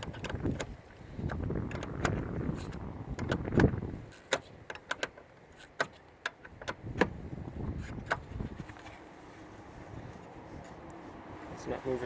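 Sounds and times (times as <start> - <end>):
wrench metal clicks: 0.0 - 7.1.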